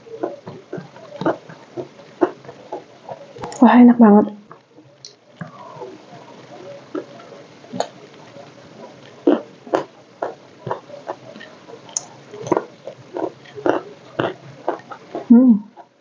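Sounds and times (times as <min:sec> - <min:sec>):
chewing crunchy food: 0:00.0 - 0:03.6, 0:04.4 - 0:16.0.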